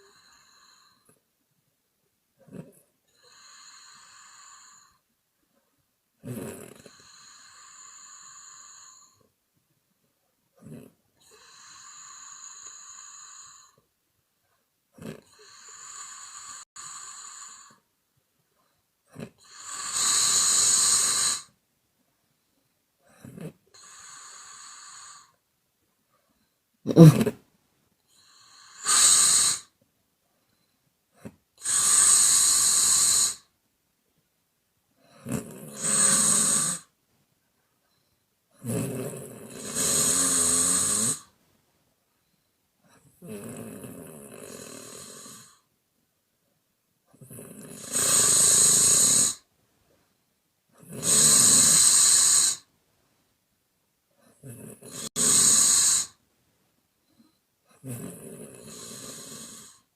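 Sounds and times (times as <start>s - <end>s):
woman snoring: 0.0s - 1.2s, 2.4s - 5.0s, 6.2s - 9.2s, 10.6s - 13.8s, 15.0s - 17.8s, 19.1s - 21.6s, 23.0s - 25.4s, 26.4s - 27.4s, 28.1s - 29.8s, 30.5s - 33.5s, 35.0s - 37.0s, 37.9s - 41.3s, 42.9s - 45.7s, 47.1s - 49.5s, 50.8s - 52.7s, 54.2s - 56.2s, 57.2s - 59.9s.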